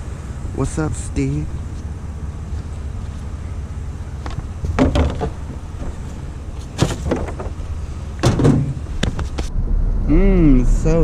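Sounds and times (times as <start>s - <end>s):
vehicle engine running: 0.0s - 11.0s
door knocks and thumps: 4.7s - 5.4s, 8.2s - 9.2s.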